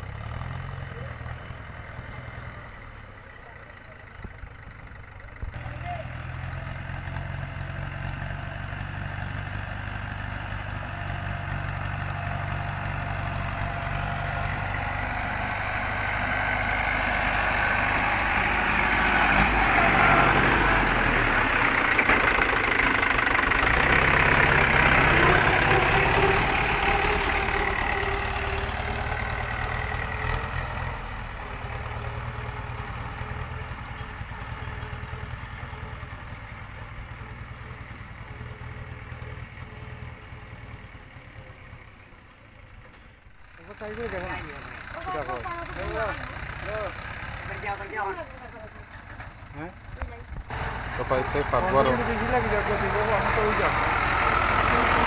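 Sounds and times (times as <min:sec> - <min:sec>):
heavy machinery diesel engine: 0:00.0 - 0:55.0.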